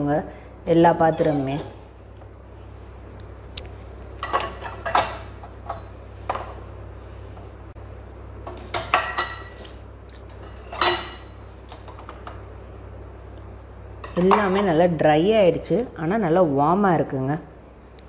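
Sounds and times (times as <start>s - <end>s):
dishes and cutlery clinking: 4.2s - 6.6s, 8.5s - 9.7s, 10.4s - 11.3s.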